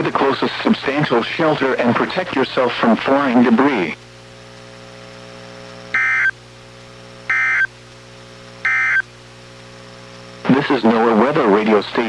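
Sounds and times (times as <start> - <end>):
steady low hum: 0.0 - 12.0
digital data tone bursts: 6.0 - 6.3, 7.3 - 7.7, 8.7 - 9.0.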